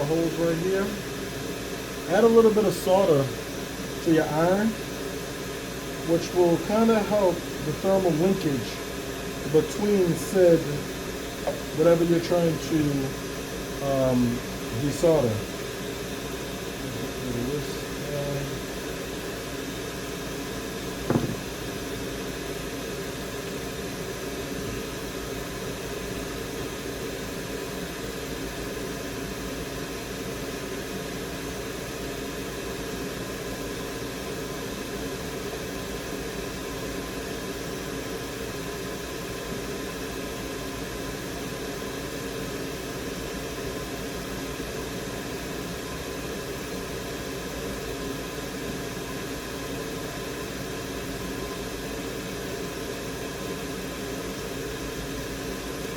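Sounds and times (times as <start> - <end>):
steady machine hum: 0.0 - 55.9
short knock: 21.1 - 21.6.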